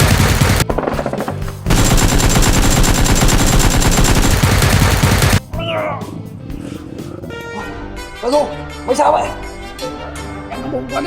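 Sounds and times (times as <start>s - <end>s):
machine-gun fire: 0.0s - 0.7s, 1.7s - 5.4s
background music: 0.0s - 11.0s.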